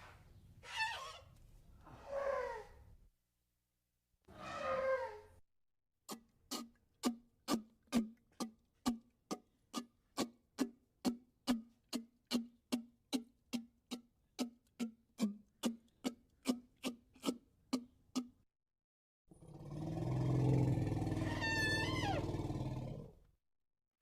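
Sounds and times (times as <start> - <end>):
low rumbling growl: 19.4 - 23.2
high squealing cry: 21.2 - 22.4.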